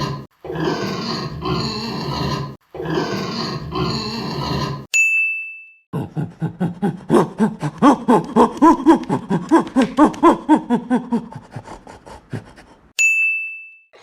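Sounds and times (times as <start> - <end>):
animal calls like laughter: 6.0 - 12.5.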